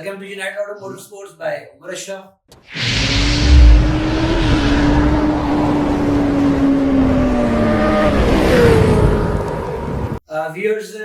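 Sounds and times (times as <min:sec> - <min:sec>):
vehicle engine passing by: 0:02.7 - 0:10.2.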